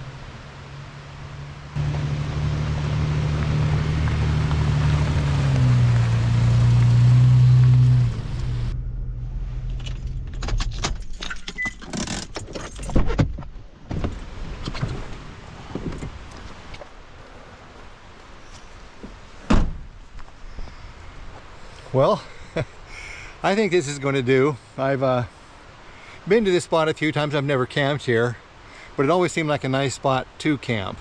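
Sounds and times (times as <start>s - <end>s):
vehicle engine running: 0.0s - 10.4s
rattling clicks: 9.7s - 13.4s
keys jangling: 9.8s - 13.1s.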